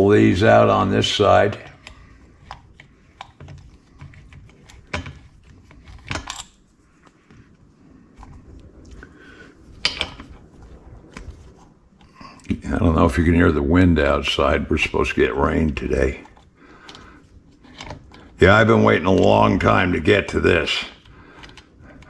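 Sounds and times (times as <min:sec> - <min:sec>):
metal parts and tools clinking: 0:03.4 - 0:06.6.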